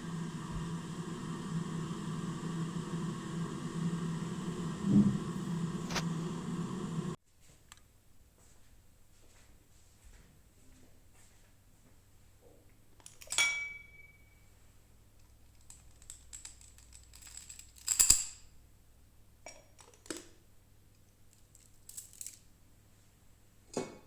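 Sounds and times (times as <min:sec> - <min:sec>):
ringing clink: 0:13.3 - 0:14.4
small objects clicking and knocking: 0:15.2 - 0:18.4, 0:21.3 - 0:22.5.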